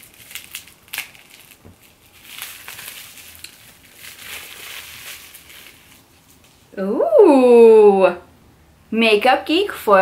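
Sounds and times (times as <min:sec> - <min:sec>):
wrapping paper rustling: 0:00.0 - 0:06.7.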